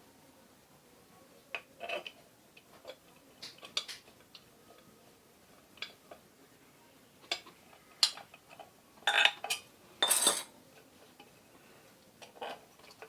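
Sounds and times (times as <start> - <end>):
metal tools clinking: 10.0 - 10.5.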